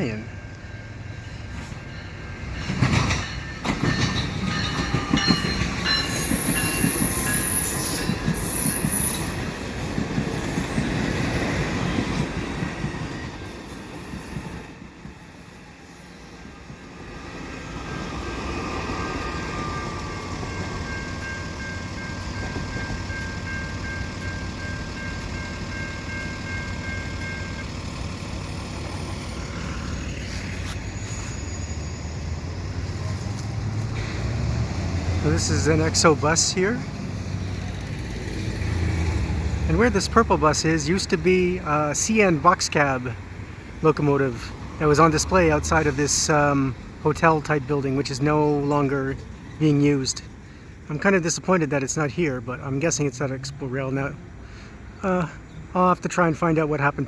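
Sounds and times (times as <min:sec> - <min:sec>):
train wheels knocking over rail joints: 0:02.4 - 0:13.2
high wheel squeal: 0:03.6 - 0:16.5, 0:28.4 - 0:33.3.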